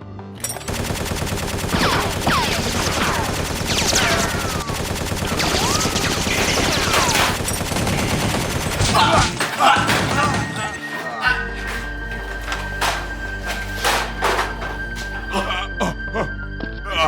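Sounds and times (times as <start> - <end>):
rapid automatic gunfire: 0.7 - 10.6, 11.6 - 15.5.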